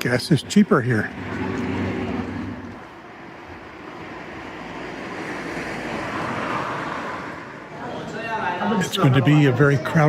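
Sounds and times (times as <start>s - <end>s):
traffic rumble: 0.0s - 10.0s
vehicle engine humming: 0.0s - 10.0s.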